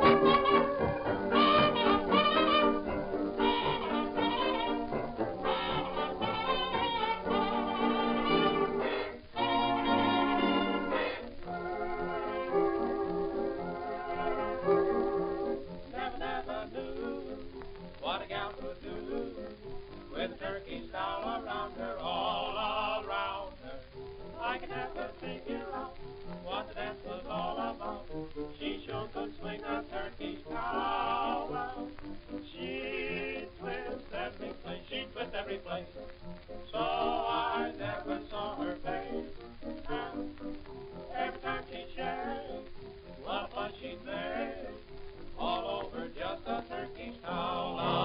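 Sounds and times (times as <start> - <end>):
song with wavering vocals: 8.3 - 48.0.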